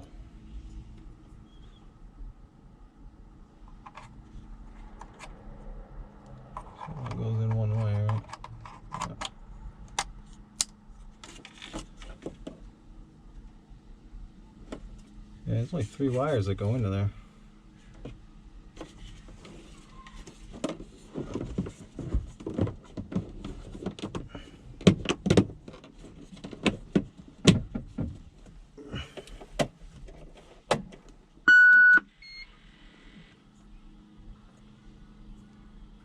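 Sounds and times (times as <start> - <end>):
electronic beeps: 31.5 - 33.3.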